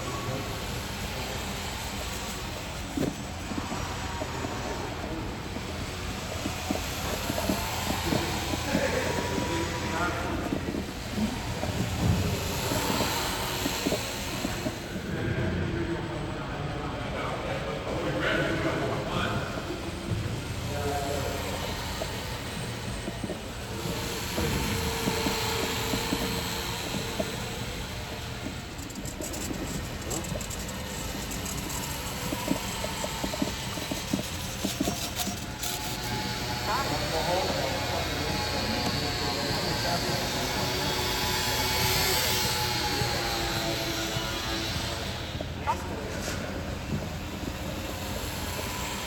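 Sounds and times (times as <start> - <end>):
model plane motor whine: 0.0 - 15.0, 20.4 - 49.0
hubbub of a large hall: 0.0 - 49.0.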